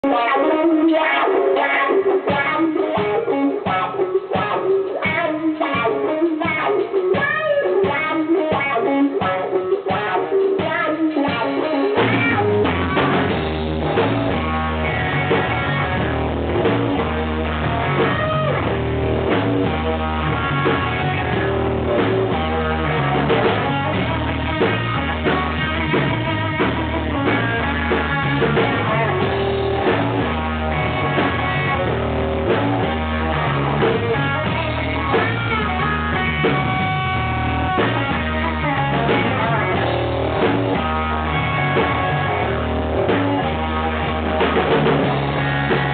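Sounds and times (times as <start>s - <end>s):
bass guitar: 0.0s - 45.9s
blues band playing live: 0.0s - 45.9s
drum kit: 0.0s - 45.9s.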